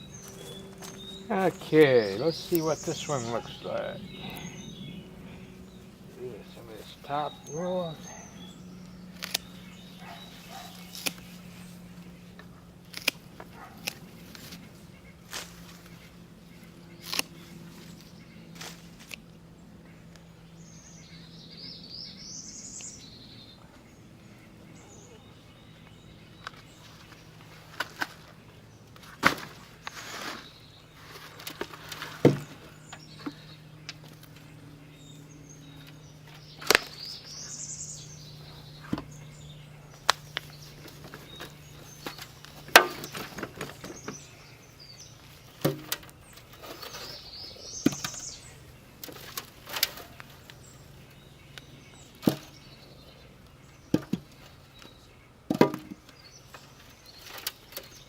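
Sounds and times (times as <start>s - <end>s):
soil rustling and knocks: 26.6s - 33.4s, 39.9s - 44.4s, 45.2s - 50.6s.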